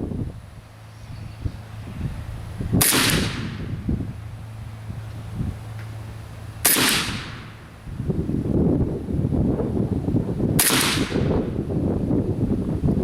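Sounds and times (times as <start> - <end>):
rifle shots with echo: 2.8 - 3.6, 6.6 - 7.6, 10.6 - 11.4.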